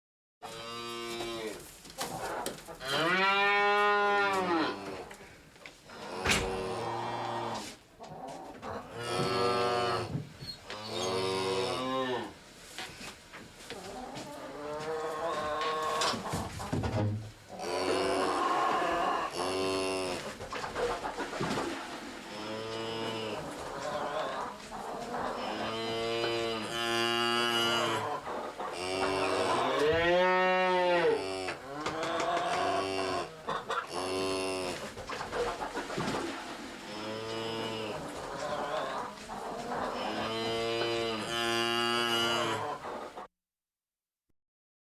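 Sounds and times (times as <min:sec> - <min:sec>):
cows mooing: 0:02.8 - 0:05.0, 0:08.9 - 0:10.1, 0:17.6 - 0:20.3, 0:22.3 - 0:24.4, 0:25.3 - 0:34.8, 0:36.8 - 0:38.8, 0:39.9 - 0:42.8.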